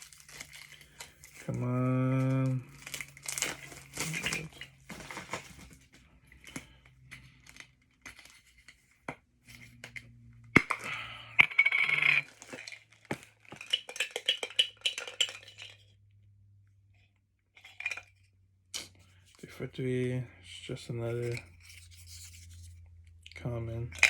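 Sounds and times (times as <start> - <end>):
packaging rustling: 0.0 - 8.8
can and lid clinking: 13.6 - 15.8.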